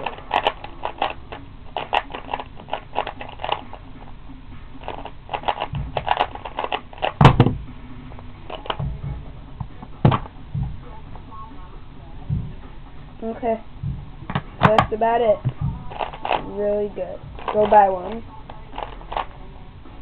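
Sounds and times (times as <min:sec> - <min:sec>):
puzzle cube clicking: 0:00.0 - 0:03.8, 0:04.8 - 0:07.5, 0:08.5 - 0:08.8, 0:15.8 - 0:16.6, 0:17.4 - 0:19.3
dull thumps: 0:04.8 - 0:07.8, 0:08.5 - 0:11.0, 0:12.2 - 0:13.0, 0:13.8 - 0:19.4.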